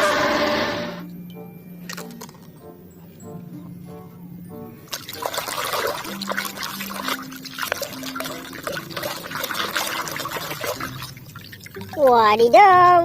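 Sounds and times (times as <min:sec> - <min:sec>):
water splashing and trickling: 0:04.7 - 0:13.0.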